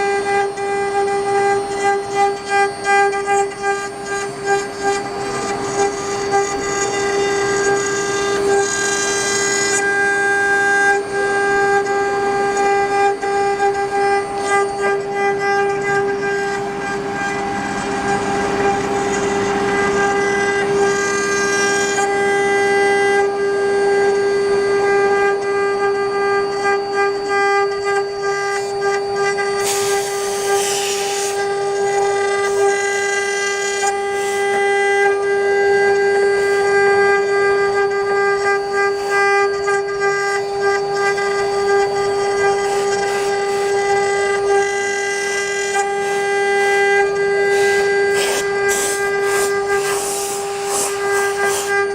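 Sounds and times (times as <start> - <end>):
wood lathe whine: 0.0 - 51.9
burst of hiss: 29.6 - 31.4, 47.5 - 51.7
cutting wood noise: 41.8 - 51.9.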